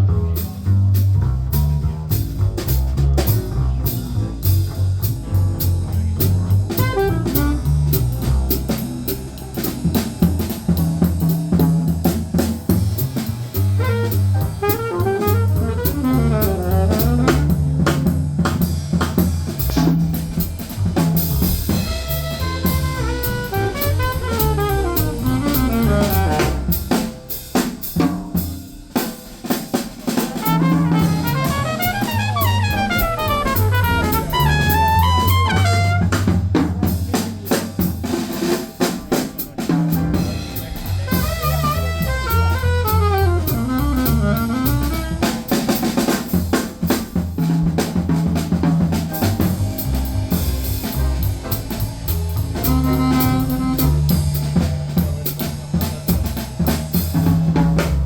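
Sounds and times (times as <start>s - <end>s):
low bass line: 0.0s - 27.0s, 30.4s - 36.4s, 40.0s - 45.4s, 47.8s - 58.0s
drum kit playing: 0.0s - 58.0s
fast melodic runs: 21.5s - 26.7s, 30.4s - 36.1s, 40.8s - 45.1s, 49.2s - 54.1s.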